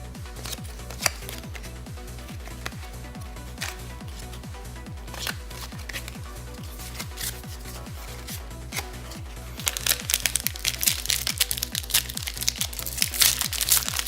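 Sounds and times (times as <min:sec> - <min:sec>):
background music with beat: 0:00.0 - 0:14.0
wrapper crinkling and tearing: 0:00.4 - 0:01.6, 0:05.1 - 0:14.0.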